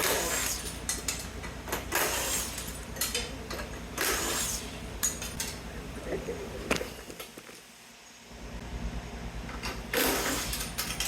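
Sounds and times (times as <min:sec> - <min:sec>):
steady low hum: 0:00.0 - 0:11.0
metallic clicks of parts and tools: 0:00.4 - 0:04.2, 0:05.0 - 0:05.6, 0:10.4 - 0:11.0.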